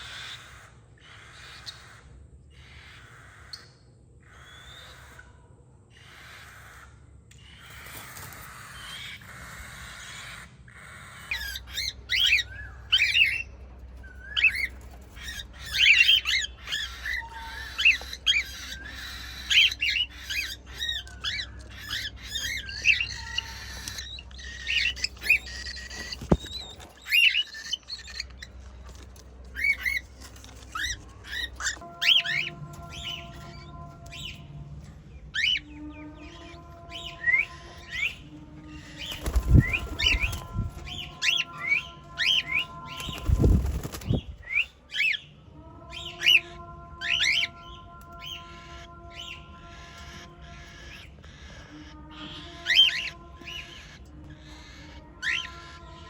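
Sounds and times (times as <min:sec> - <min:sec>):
cockatiels chirping and squawking: 0:00.0 - 0:56.0.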